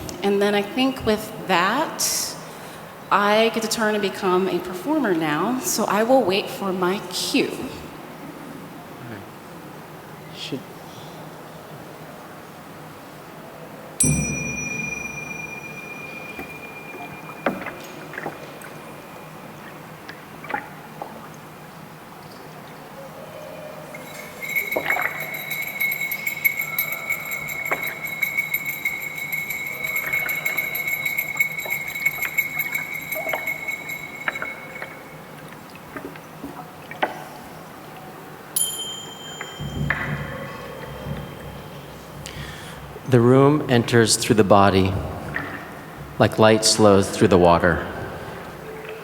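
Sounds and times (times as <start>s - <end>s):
metal bell ringing: 14.0s - 19.4s, 23.9s - 35.5s, 38.6s - 44.3s.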